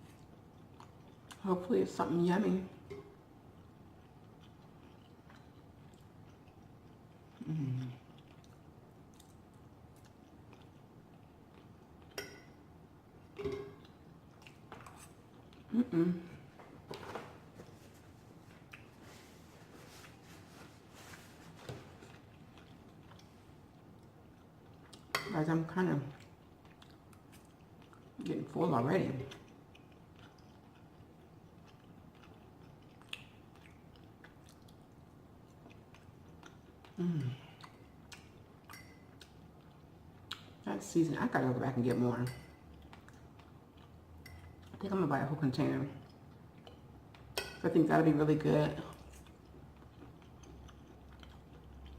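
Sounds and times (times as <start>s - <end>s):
person chewing: 0.0s - 1.4s, 3.5s - 12.5s, 13.2s - 16.5s, 17.6s - 25.2s, 26.1s - 28.2s, 29.3s - 40.6s, 42.6s - 44.8s, 46.0s - 47.5s, 48.9s - 51.9s.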